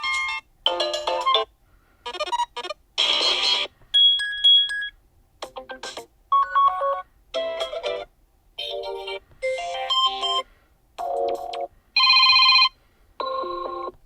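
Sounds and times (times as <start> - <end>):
tablet ringtone snippets: 0.0 - 5.0, 8.6 - 13.9.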